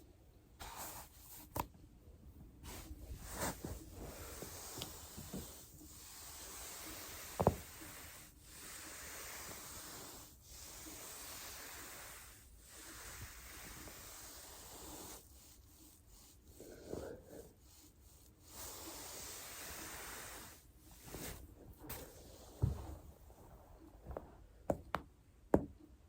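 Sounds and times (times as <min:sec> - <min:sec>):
foam roller rubbing hiss: 0:02.6 - 0:23.1.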